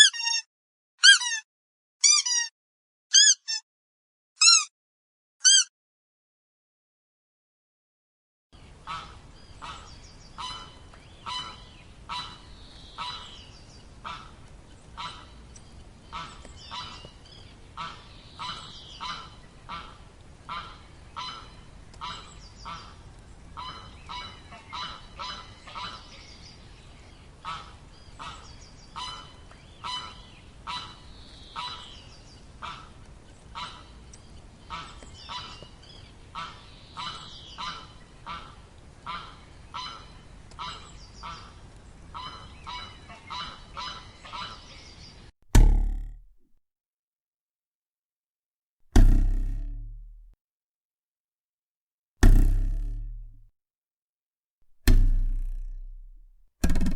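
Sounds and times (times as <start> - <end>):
goose honking: 17.8 - 23.0, 23.6 - 26.1, 32.6 - 33.0, 36.4 - 41.6, 42.2 - 44.7.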